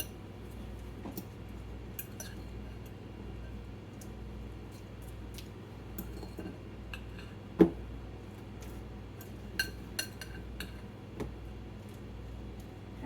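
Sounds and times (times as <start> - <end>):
utensil clinking against a bowl: 1.9 - 3.6, 9.2 - 10.8.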